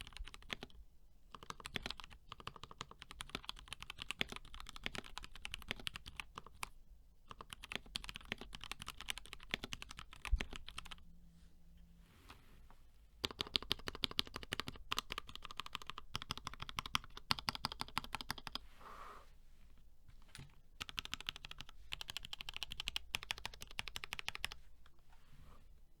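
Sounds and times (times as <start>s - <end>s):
fast typing on mechanical keyboard: 0.0s - 6.7s, 7.3s - 11.0s, 13.2s - 18.6s, 20.8s - 24.6s.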